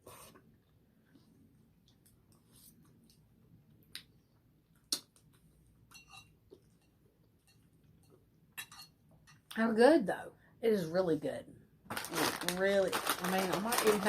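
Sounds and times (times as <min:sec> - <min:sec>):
faint chewing: 0:00.1 - 0:08.4.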